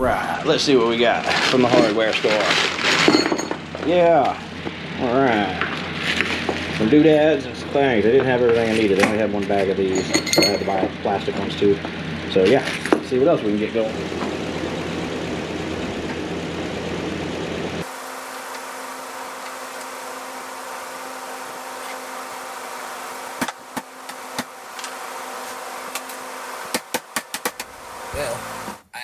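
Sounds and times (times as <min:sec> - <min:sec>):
machine hum: 0:00.0 - 0:29.0
sharp clicks and knocks: 0:25.9 - 0:27.8.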